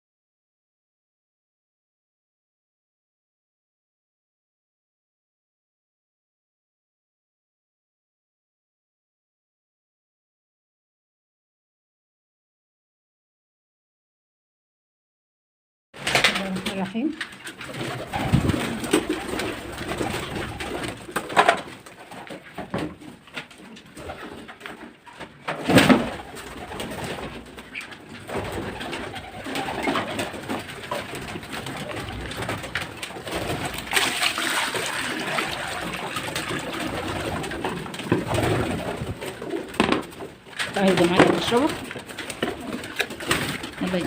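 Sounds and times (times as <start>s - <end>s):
pigeons cooing: 17.6s - 21.7s, 25.8s - 33.9s
sharp knock or clatter: 39.8s - 40.1s.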